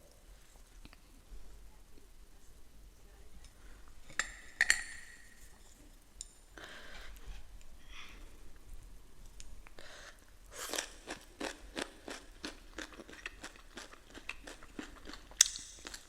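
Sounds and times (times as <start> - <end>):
chewing crunchy food: 10.6 - 16.0.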